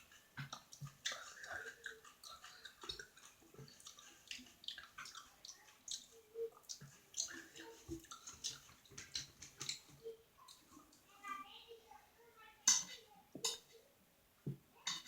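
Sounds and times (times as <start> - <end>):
wet chewing mouth noises: 0.0 - 9.9.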